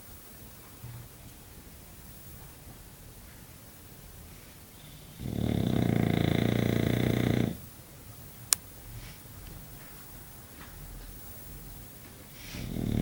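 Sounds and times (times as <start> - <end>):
dog snoring: 4.7 - 7.7, 12.3 - 13.0.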